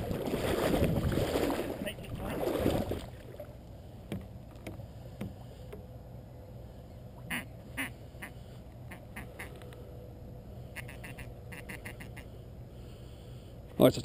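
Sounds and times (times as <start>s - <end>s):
duck quacks: 7.3s - 9.5s, 10.8s - 12.3s.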